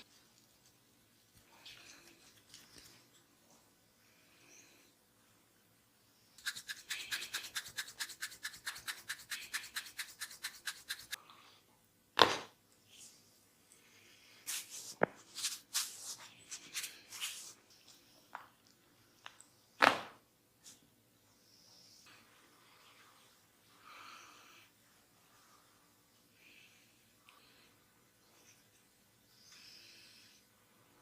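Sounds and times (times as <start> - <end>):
crisp scratching strokes on hair: 6.4 - 11.2, 14.4 - 17.6
hands rubbing hair: 6.4 - 11.2, 14.5 - 17.6.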